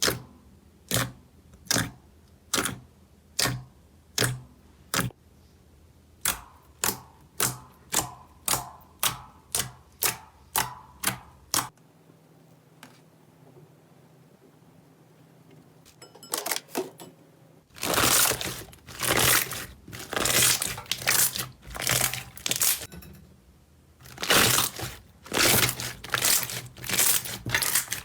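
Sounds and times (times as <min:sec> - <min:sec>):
slime popping: 0:17.8 - 0:22.9, 0:24.0 - 0:28.0.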